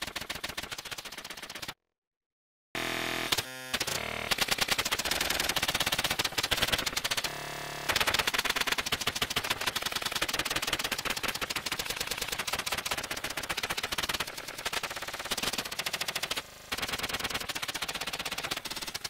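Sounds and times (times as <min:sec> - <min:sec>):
machine rattling and clattering: 0:07.9 - 0:19.0.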